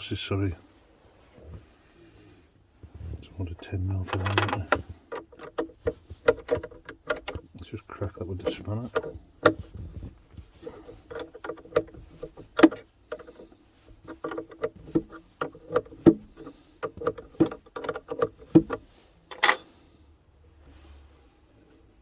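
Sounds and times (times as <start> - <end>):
spanner clinking on metal nut: 19.3 - 20.2.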